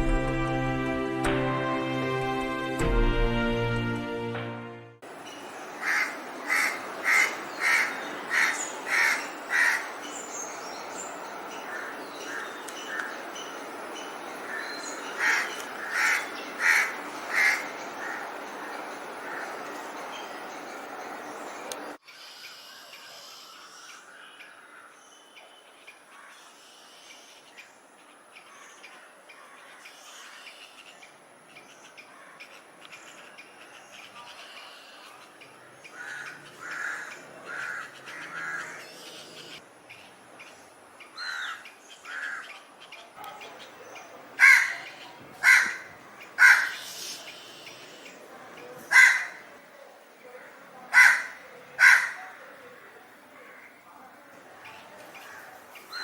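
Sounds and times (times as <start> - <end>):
music intro: 0.0 - 5.0
steady outdoor hiss: 0.0 - 56.0
small birds chirping: 5.1 - 56.0
crows cawing: 5.8 - 9.9, 11.7 - 13.2, 14.4 - 19.6, 35.9 - 39.4, 41.2 - 42.5, 44.4 - 47.1, 48.9 - 49.5, 50.9 - 52.4.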